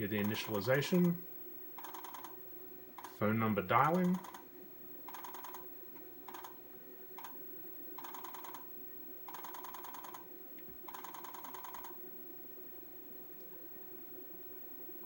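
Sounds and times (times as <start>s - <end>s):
faint steady tone: 0.0s - 15.0s
modem dialing buzzes: 8.0s - 12.0s.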